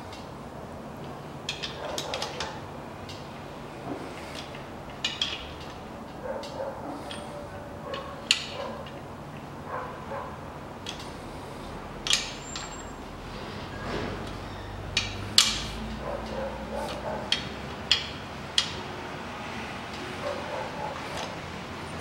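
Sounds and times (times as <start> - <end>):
wrench clicking and knocking: 4.3 - 5.8, 7.9 - 9.0, 12.0 - 12.8, 14.2 - 15.9, 16.8 - 18.8.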